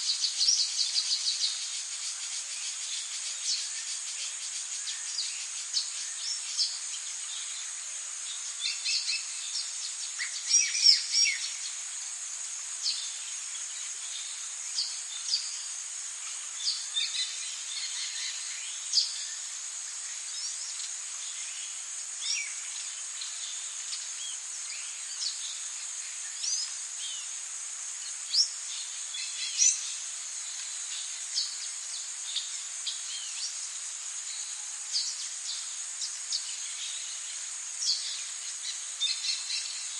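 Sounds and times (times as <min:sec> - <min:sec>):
bird calls and chirps: 0:08.3 - 0:11.8, 0:34.3 - 0:39.9.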